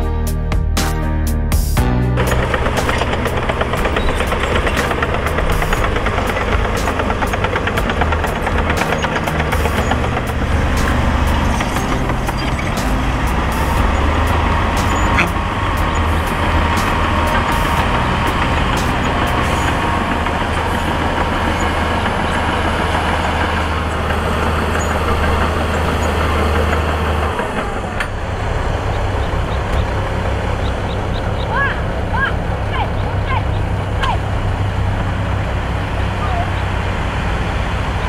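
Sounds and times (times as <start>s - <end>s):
diesel machinery engine drone: 0.0s - 38.0s
sharp clicks and knocks: 2.2s - 16.1s.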